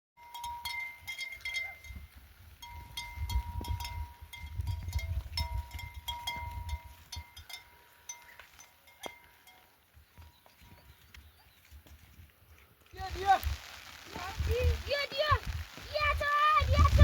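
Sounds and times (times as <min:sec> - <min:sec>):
livestock bells clinking: 0:00.2 - 0:11.0.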